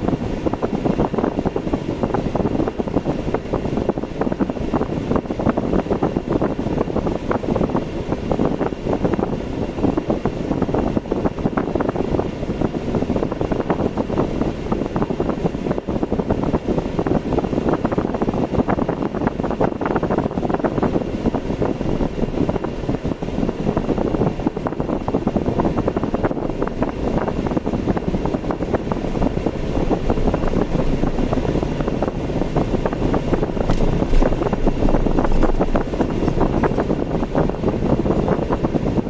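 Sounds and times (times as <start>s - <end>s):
wind buffeting microphone: 0.0s - 39.0s
tyre and road rumble: 20.1s - 39.0s.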